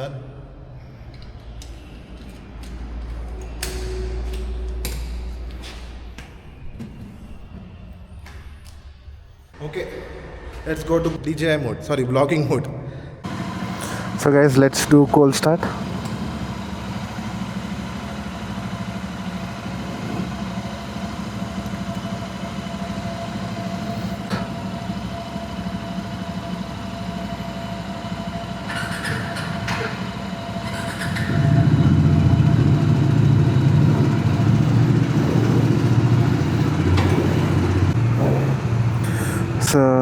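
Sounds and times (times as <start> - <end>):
motorcycle engine idling: 13.3 - 39.7.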